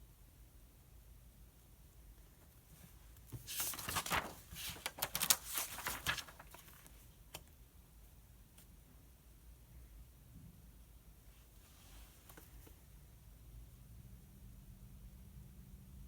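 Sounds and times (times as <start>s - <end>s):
paper page rustling: 3.2s - 7.1s.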